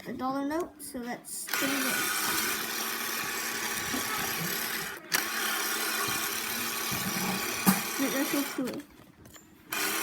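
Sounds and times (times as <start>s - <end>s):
small electric motor whirring: 1.5s - 8.8s, 9.7s - 10.0s.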